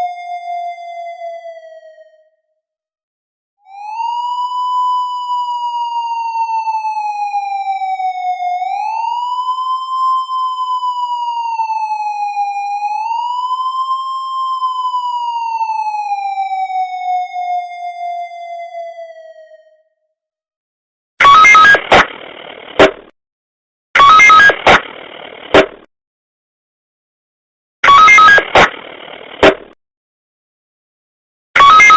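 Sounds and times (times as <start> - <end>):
police siren wailing: 0.0 - 2.5, 3.6 - 20.0, 21.2 - 22.5, 24.0 - 25.2, 27.8 - 29.4, 31.6 - 31.9.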